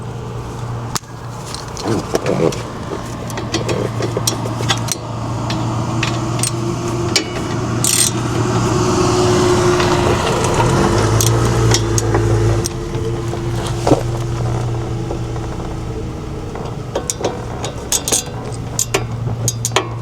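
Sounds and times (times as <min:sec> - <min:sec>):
steady low hum: 0:00.0 - 0:20.0
metal hand tools clicking: 0:01.0 - 0:08.6, 0:09.8 - 0:13.2, 0:17.0 - 0:20.0.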